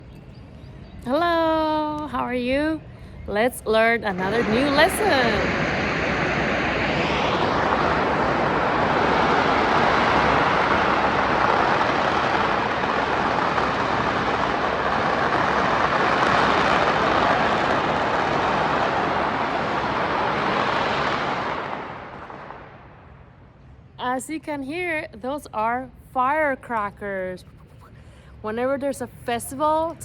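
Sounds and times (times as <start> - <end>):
firecrackers crackling: 4.1 - 23.2.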